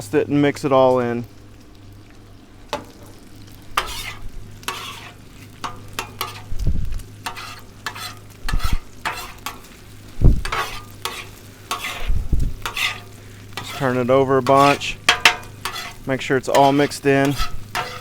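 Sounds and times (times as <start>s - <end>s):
rice sizzling: 0.0s - 18.0s
metal spatulas scraping griddle: 3.8s - 6.6s, 7.2s - 18.0s.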